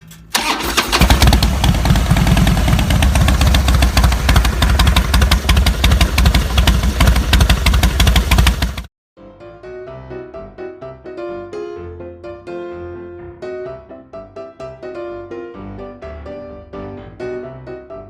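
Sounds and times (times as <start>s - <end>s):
motorcycle engine running: 0.4s - 8.9s.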